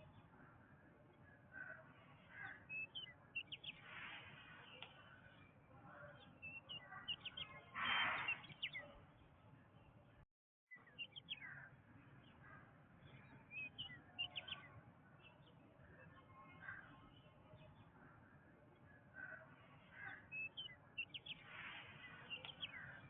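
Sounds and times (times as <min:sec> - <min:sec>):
birds chirping and calling: 0:01.4 - 0:09.0, 0:10.7 - 0:15.6, 0:16.2 - 0:23.0
harsh bird call: 0:06.6 - 0:08.8.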